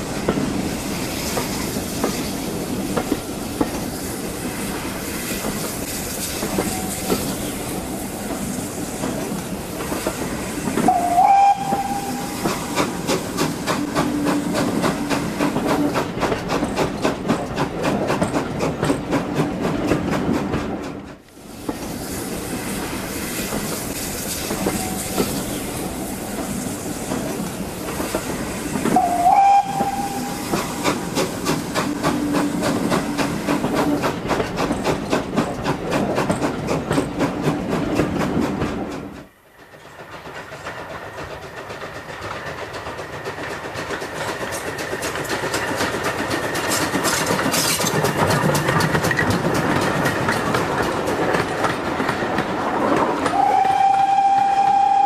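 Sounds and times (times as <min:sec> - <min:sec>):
steam train running: 0:00.0 - 0:55.0
steam train whistle: 0:10.8 - 0:12.9, 0:28.9 - 0:30.9, 0:53.3 - 0:55.0.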